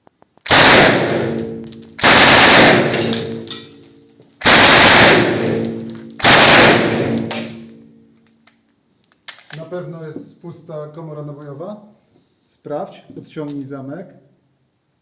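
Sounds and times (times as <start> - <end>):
rifle blasts: 0.4 - 7.9.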